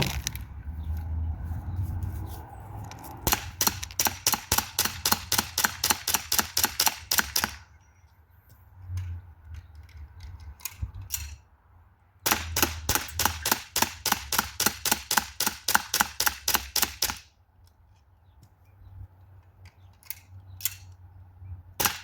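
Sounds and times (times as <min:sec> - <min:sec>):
bb pistol firing rapidly: 0:03.3 - 0:07.6, 0:21.8 - 0:22.0.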